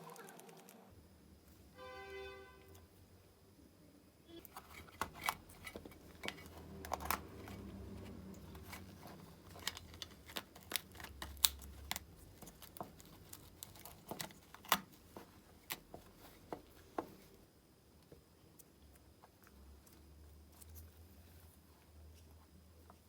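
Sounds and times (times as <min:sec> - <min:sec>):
faint low hum: 0:00.0 - 0:23.0
small objects clicking and tapping: 0:04.4 - 0:17.2.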